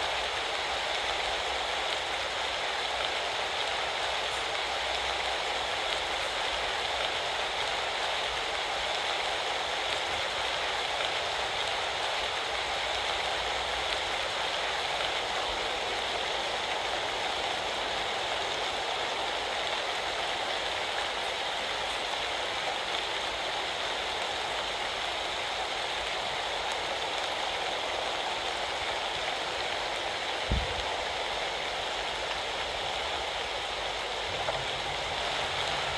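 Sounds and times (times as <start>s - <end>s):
heavy rain falling: 0.0s - 35.9s
low thump: 30.5s - 30.9s.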